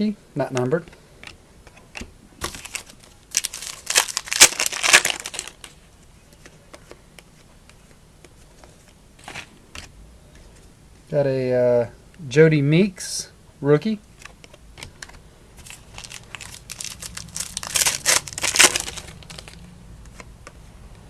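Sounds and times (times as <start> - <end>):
cards being handled: 0.5 - 9.9, 14.2 - 20.6
plastic wrapper crinkling and tearing: 2.4 - 5.8, 15.6 - 19.7.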